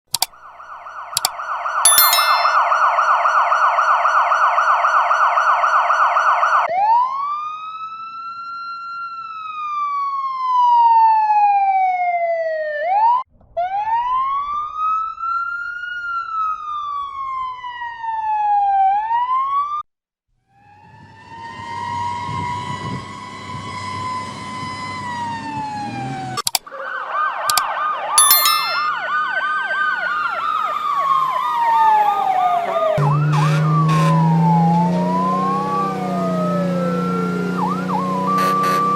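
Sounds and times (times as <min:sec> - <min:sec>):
emergency vehicle siren: 0:00.3 - 0:19.7, 0:20.6 - 0:38.9
faint steady high tones: 0:01.9 - 0:02.8, 0:28.2 - 0:29.0.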